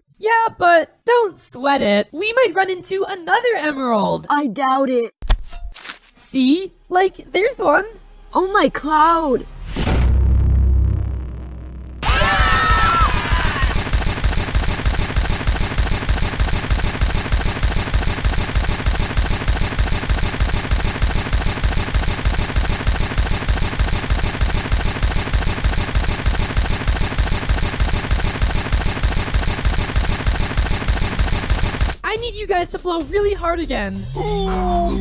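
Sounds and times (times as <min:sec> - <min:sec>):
harsh glitching noise bursts: 0:12.0 - 0:32.0.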